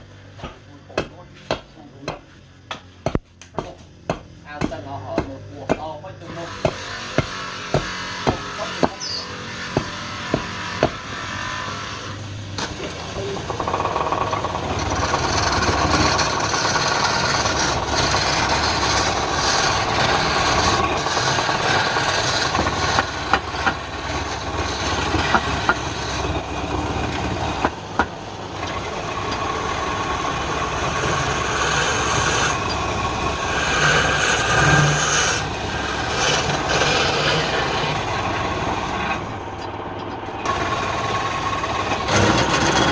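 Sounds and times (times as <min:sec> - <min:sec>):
woodworking machine motor running: 0:04.6 - 0:42.9
sharp knocks: 0:06.5 - 0:09.0, 0:09.8 - 0:11.1
dense scraping noise: 0:14.4 - 0:39.4, 0:40.4 - 0:42.9.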